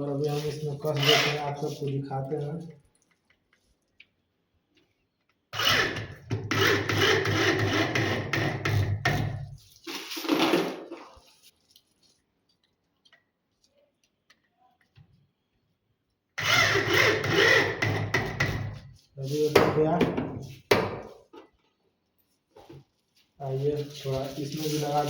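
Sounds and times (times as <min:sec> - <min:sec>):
power drill driving screws: 0:01.0 - 0:01.4, 0:05.5 - 0:08.5, 0:16.4 - 0:18.4.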